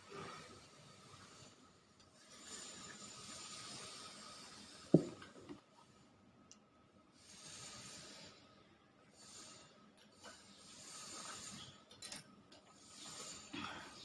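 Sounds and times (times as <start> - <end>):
faint breathing: 7.1 - 12.1, 12.7 - 14.0.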